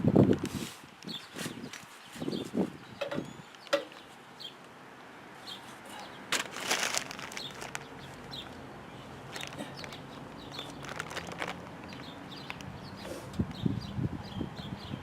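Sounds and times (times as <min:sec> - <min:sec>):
short scraping rustle: 0:00.4 - 0:02.8, 0:13.0 - 0:13.4
small birds chirping: 0:01.0 - 0:04.7, 0:05.4 - 0:15.0.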